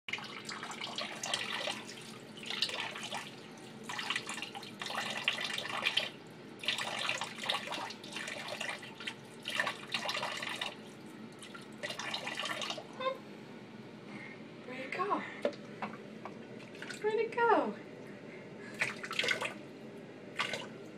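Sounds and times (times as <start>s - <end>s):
tap water running into sink: 0.1s - 10.8s, 11.4s - 12.9s.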